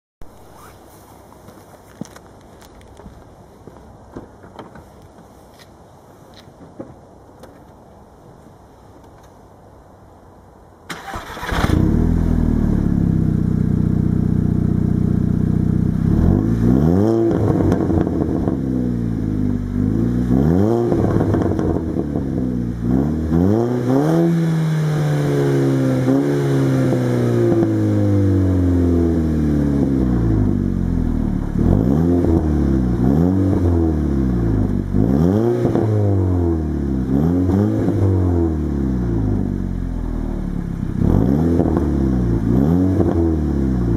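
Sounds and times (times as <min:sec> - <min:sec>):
car engine idling and revving: 0:11.0 - 0:43.9.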